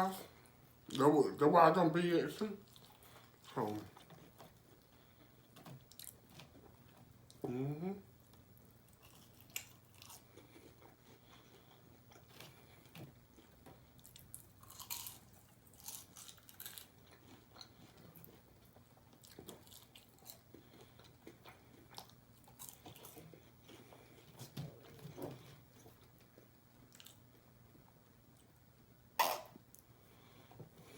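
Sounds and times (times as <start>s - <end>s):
person chewing crunchy food: 2.6s - 7.5s, 8.2s - 27.5s.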